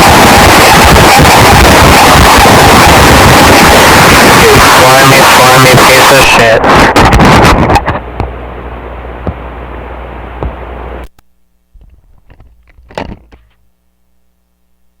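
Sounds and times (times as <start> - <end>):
glitchy clicks and crackles: 0.0 - 8.4, 10.4 - 13.7
hissing noise with low hum: 0.0 - 15.0.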